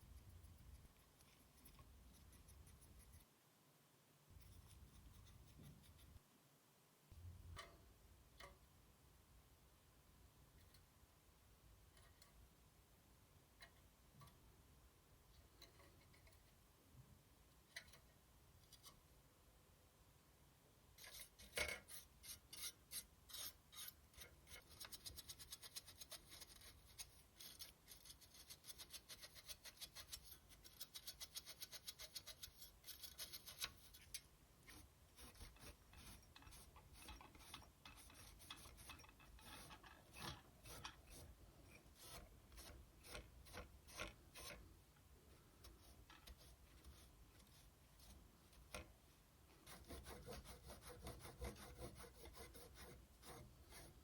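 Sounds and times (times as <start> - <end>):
brush scrubbing a heatsink: 21.0 - 44.6.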